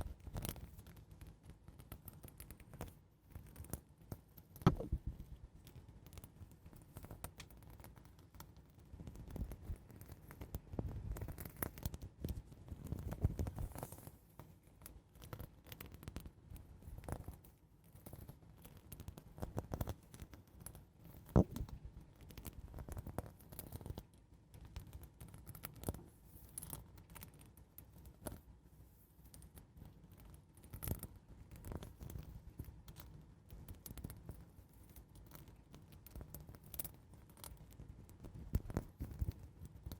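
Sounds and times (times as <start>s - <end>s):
sharp click: 4.7s - 5.0s
soft scratching near microphone: 12.2s - 14.2s.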